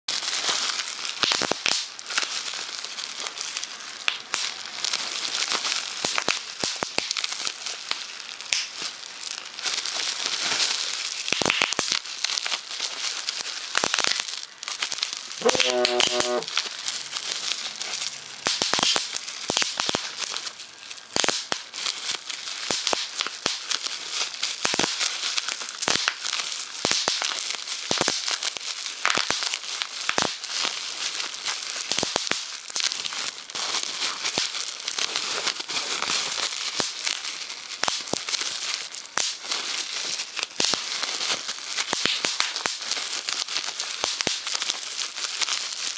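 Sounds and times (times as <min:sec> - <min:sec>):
bubble wrap crinkling and popping: 0:00.1 - 0:45.9
phone vibrating buzz: 0:15.4 - 0:16.5.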